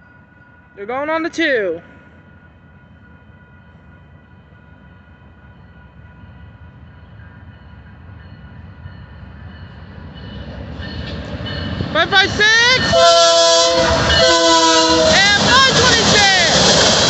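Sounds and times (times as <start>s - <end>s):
diesel locomotives rumbling: 0.0s - 17.0s
crossing signal bell ringing: 6.8s - 16.4s.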